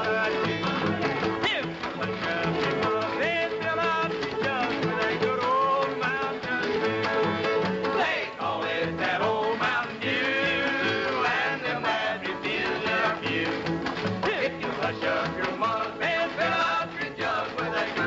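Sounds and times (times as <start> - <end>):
country string band playing: 0.0 - 18.0.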